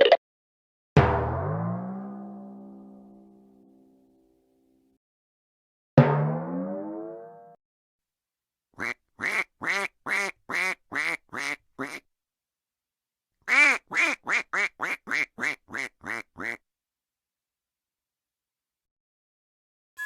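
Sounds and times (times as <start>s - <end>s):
duck quacking: 8.8s - 12.0s, 13.5s - 16.6s.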